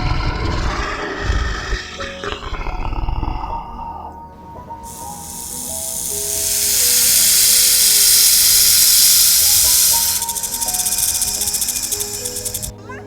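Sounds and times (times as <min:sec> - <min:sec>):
background music with held notes: 0:00.0 - 0:13.0
loud steady hiss: 0:04.8 - 0:12.7.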